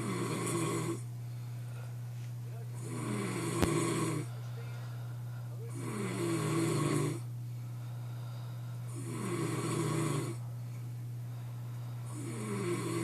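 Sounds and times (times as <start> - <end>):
man snoring: 0.0 - 1.1, 2.8 - 4.3, 5.7 - 7.3, 8.2 - 10.5, 12.1 - 13.0
steady low hum: 0.0 - 13.0.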